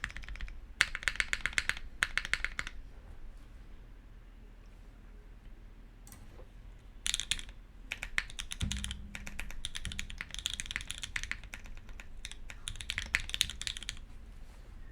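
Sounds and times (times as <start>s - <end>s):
mechanical keyboard key clacks: 0.0s - 2.7s, 7.0s - 14.0s
deeper keyboard thud: 8.4s - 10.4s.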